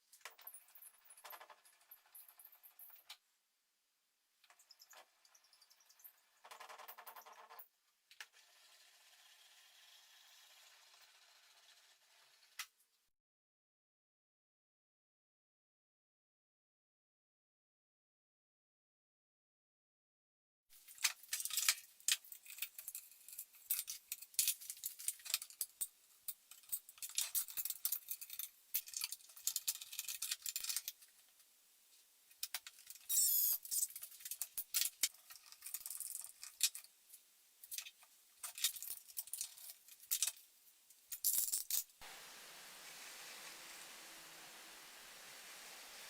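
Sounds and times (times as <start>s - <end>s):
faint steady hiss: 20.7s - 46.0s
small hard objects clicking and rattling: 20.8s - 31.2s, 32.3s - 42.0s.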